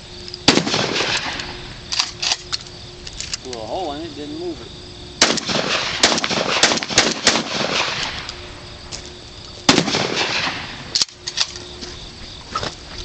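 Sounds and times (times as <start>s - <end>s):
shotgun blasts echoing: 0.5s - 1.6s, 5.2s - 8.3s, 9.7s - 10.9s.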